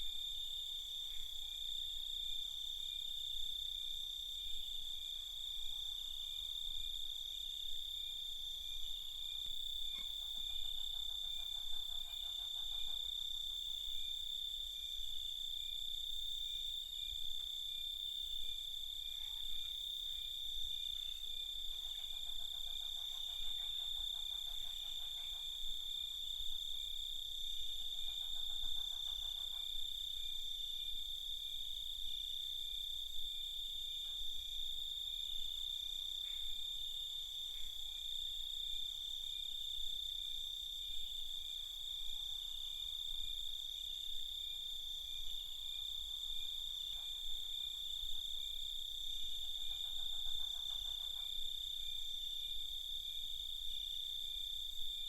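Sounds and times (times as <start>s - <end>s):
lower pulsing insect call: 0.0s - 55.0s.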